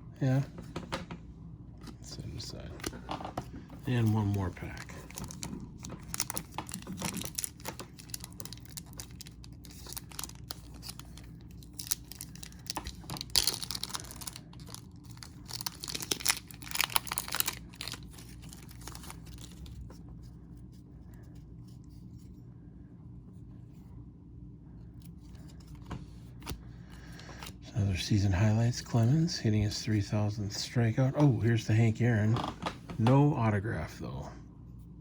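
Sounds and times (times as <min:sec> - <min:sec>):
wrapper tearing and crinkling: 0:04.0 - 0:19.8.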